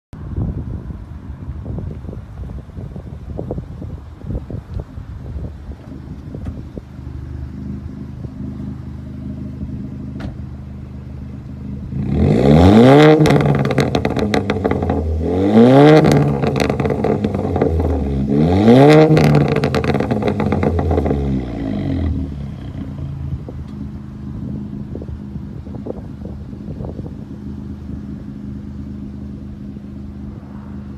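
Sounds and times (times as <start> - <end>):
car engine idling and revving: 0.2 - 30.9
exhaust crackles and pops: 11.4 - 29.1.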